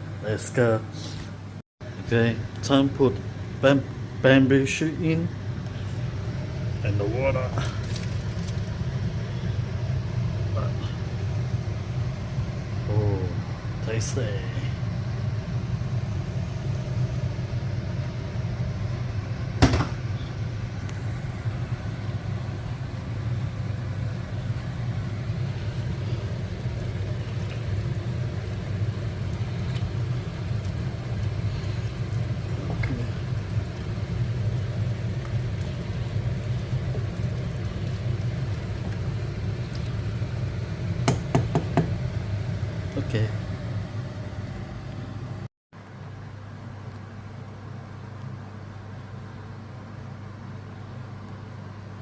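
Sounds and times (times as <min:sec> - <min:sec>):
low hum: 0:01.8 - 0:41.3.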